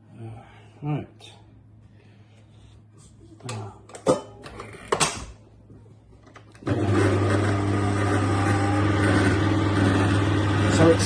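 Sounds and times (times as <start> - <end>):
electric blender running: 6.6 - 11.0.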